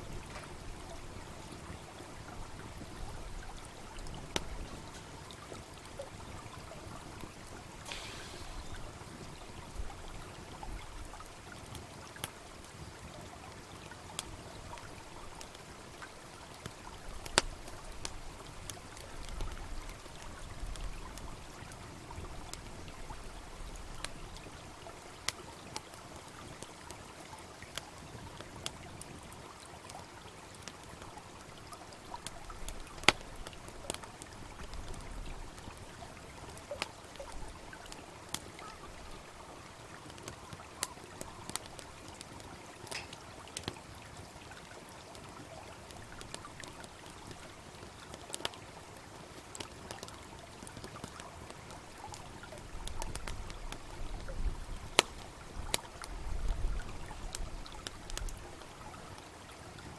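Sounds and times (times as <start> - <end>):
babbling brook: 0.0 - 59.9
campfire crackling and popping: 0.0 - 59.9.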